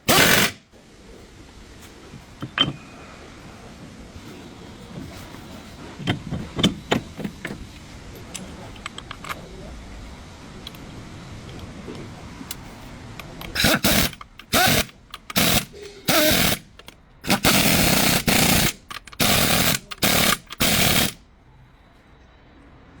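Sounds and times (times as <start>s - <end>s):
power tool bursts: 0.0s - 0.6s, 13.5s - 21.2s.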